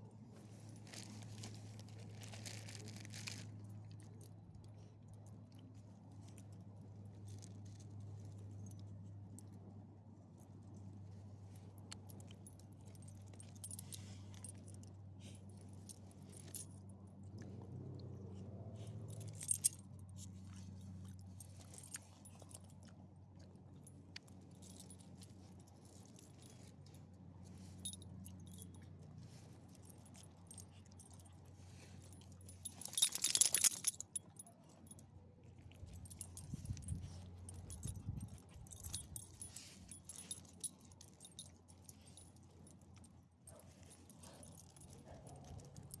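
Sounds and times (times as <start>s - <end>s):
low steady hum: 0.0s - 46.0s
dog collar tags jingling: 11.8s - 16.9s, 18.7s - 22.9s, 23.8s - 35.0s, 35.7s - 46.0s.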